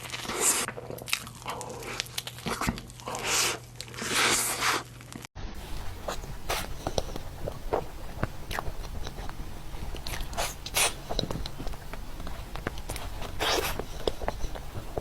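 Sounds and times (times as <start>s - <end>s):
wet chewing: 5.6s - 15.0s
mouth smacks and clicks: 5.8s - 15.0s.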